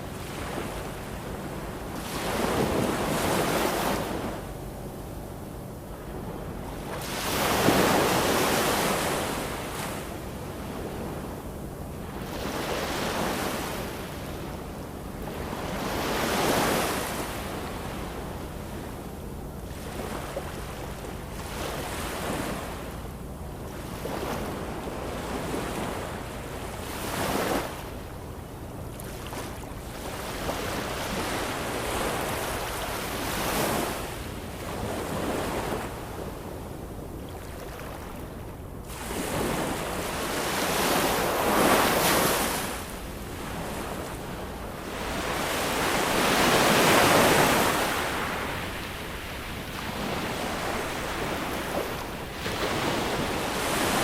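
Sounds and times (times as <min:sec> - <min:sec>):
sea waves breaking: 0:00.2 - 0:04.4, 0:06.0 - 0:11.4, 0:37.4 - 0:54.0.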